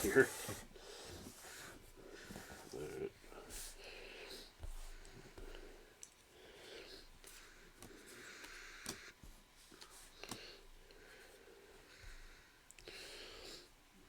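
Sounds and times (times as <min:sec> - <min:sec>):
cards sliding and rustling: 0:07.8 - 0:10.6.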